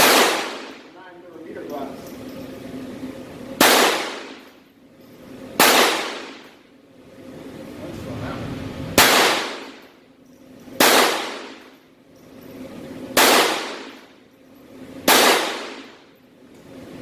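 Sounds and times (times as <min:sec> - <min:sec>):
pistol shots echoing: 0:00.0 - 0:00.9, 0:03.6 - 0:04.5, 0:05.6 - 0:06.5, 0:09.0 - 0:09.9, 0:10.8 - 0:11.7, 0:13.2 - 0:14.1, 0:15.1 - 0:16.0.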